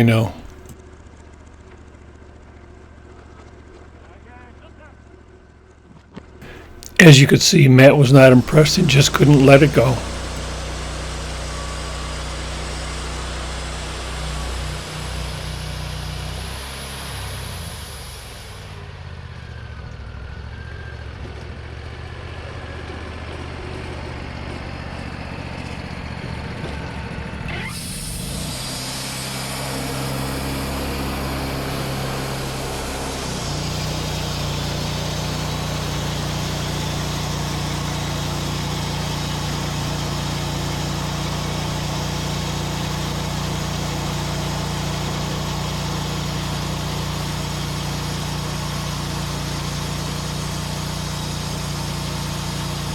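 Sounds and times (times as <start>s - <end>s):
engine running: 6.4s - 16.1s, 28.0s - 52.9s.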